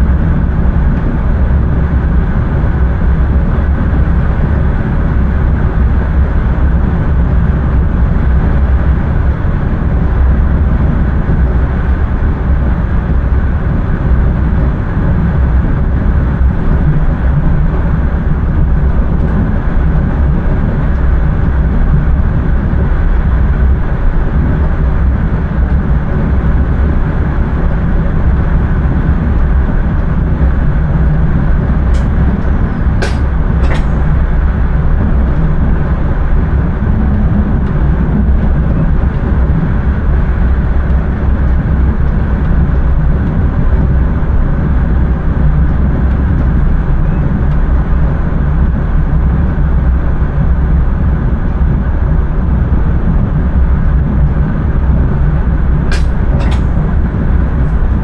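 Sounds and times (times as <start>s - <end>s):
train rumbling on track: 0.0s - 58.0s.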